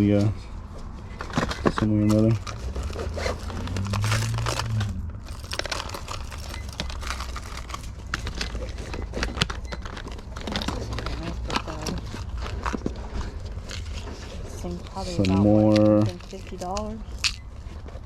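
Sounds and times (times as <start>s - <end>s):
crinkling and rustling: 0.8s - 18.0s.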